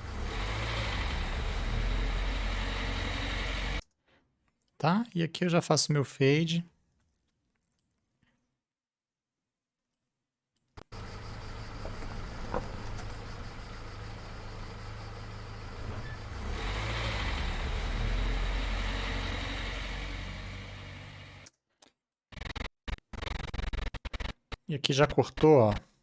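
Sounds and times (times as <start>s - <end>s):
car engine running: 0.0s - 3.8s, 10.8s - 21.4s.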